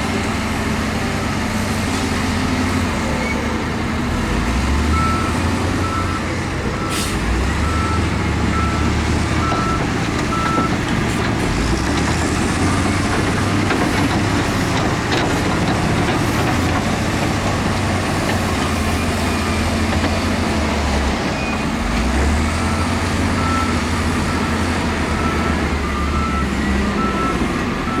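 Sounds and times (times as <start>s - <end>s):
diesel machinery engine rumble: 0.0s - 28.0s
reversing alarm beeping: 4.9s - 11.2s, 22.7s - 28.0s.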